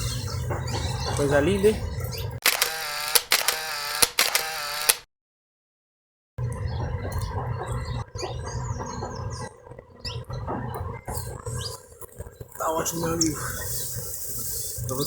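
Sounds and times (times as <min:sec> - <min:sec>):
clicks: 0:02.4 - 0:05.0.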